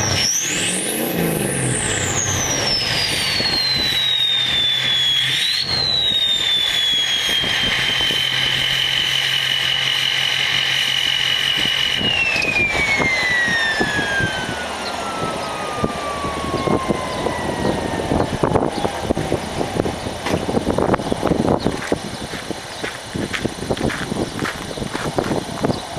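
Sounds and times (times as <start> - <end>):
turbo whistle: 0.0 - 18.2
diesel engine: 0.0 - 25.9.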